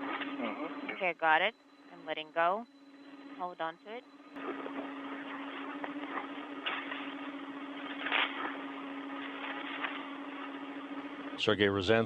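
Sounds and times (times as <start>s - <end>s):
low constant hum tone: 0.0s - 12.0s
radio static hiss: 3.6s - 12.0s.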